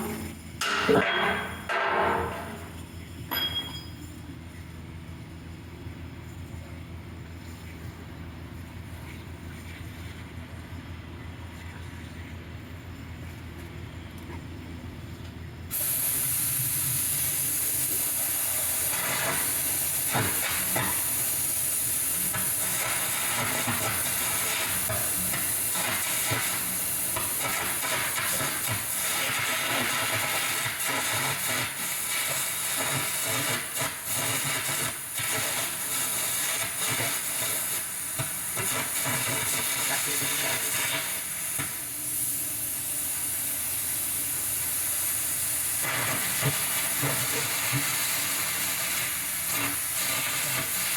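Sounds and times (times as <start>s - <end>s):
cutting torch hissing: 15.7s - 50.9s.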